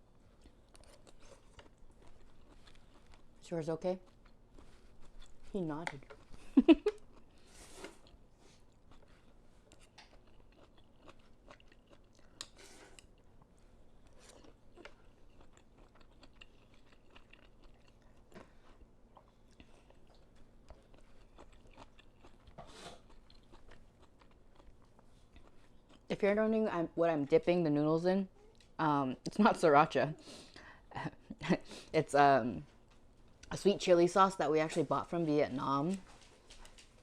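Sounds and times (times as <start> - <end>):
person chewing noodles: 0.1 - 3.4, 4.0 - 26.1.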